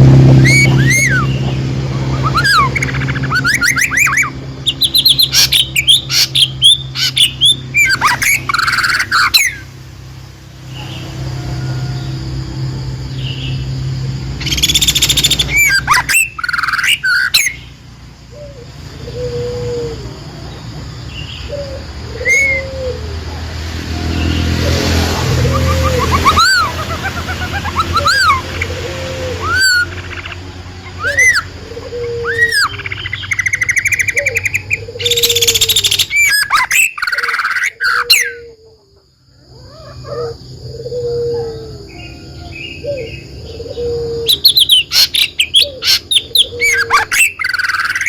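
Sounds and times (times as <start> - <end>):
songbirds chirping: 0.0 - 48.0
low bird whistles: 0.4 - 1.4, 22.2 - 22.8.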